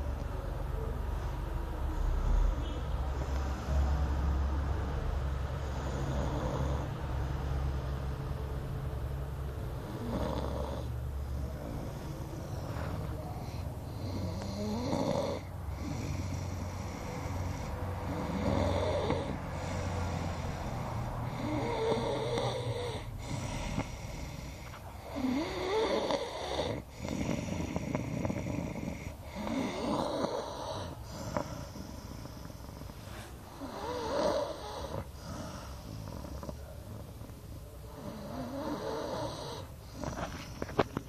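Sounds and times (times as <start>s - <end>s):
man snoring: 5.6s - 7.2s, 9.7s - 40.8s.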